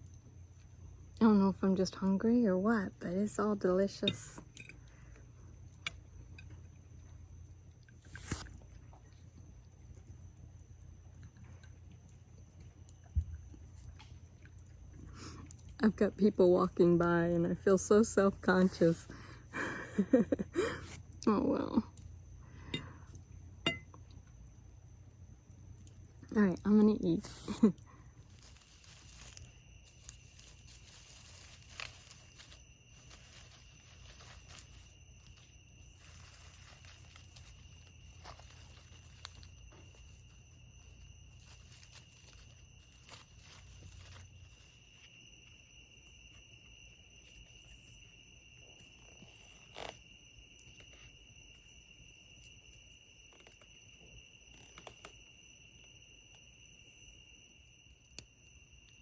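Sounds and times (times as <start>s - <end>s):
night insects trilling: 0.0s - 59.0s
soft noisy haze: 24.0s - 46.1s.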